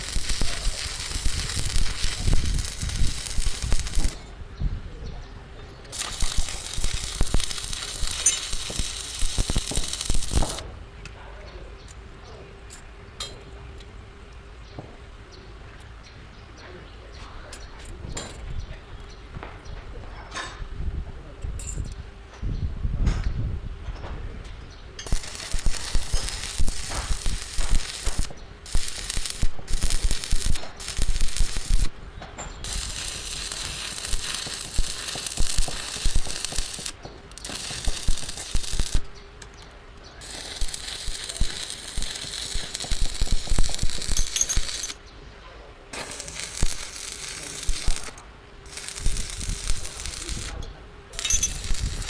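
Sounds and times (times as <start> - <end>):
crackling hiss of metalworking: 0.0 - 14.9, 23.8 - 52.0
sharp metallic clinks and knocks: 5.9 - 10.6, 40.3 - 45.0, 50.6 - 52.0.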